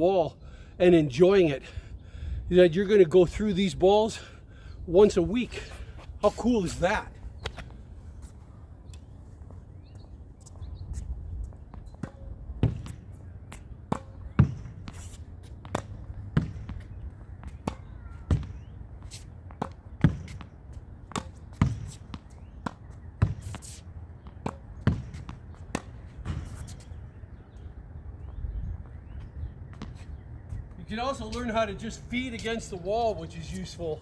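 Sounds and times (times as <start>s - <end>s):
ball bouncing on court: 11.8s - 26.6s
racket hitting tennis ball: 11.9s - 27.0s.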